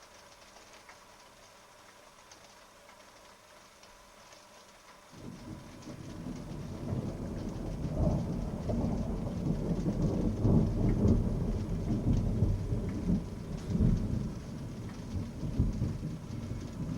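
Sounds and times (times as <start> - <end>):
thunder rumbling: 5.2 - 16.9.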